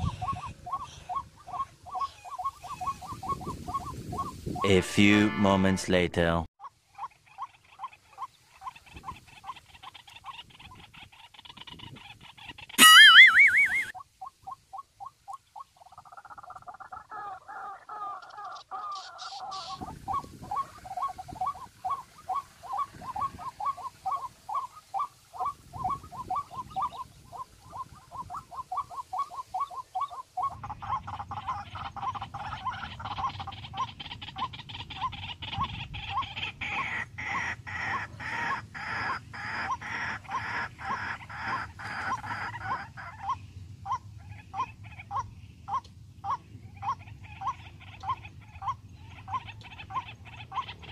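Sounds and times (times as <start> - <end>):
bird calling short notes: 12.8 - 14.0.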